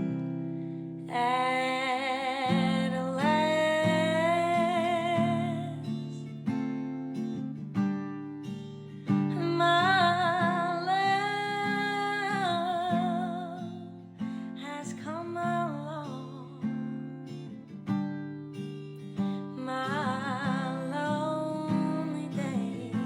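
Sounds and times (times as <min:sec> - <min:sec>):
strummed acoustic guitar: 0:00.0 - 0:23.0
person singing with vibrato: 0:01.1 - 0:06.0.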